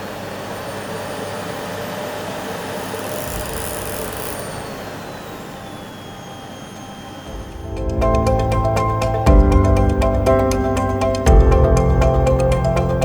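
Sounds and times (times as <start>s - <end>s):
vacuum cleaner running: 0.0s - 8.2s.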